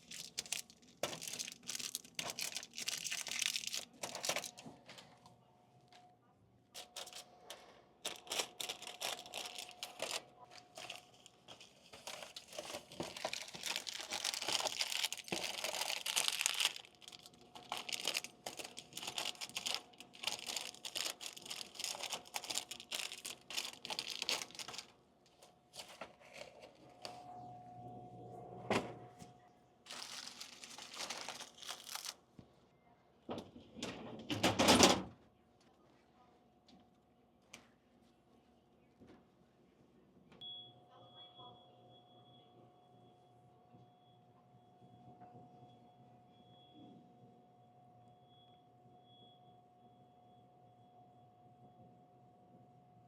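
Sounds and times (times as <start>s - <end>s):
plastic packaging crinkling: 0.0s - 5.0s, 6.8s - 7.3s, 8.0s - 25.0s, 29.9s - 32.2s.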